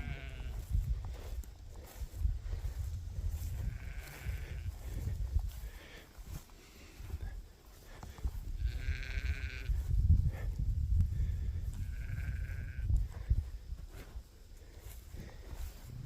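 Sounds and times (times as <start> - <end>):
sheep bleating: 0.0 - 0.7, 3.6 - 4.8, 8.6 - 9.8, 11.8 - 12.9.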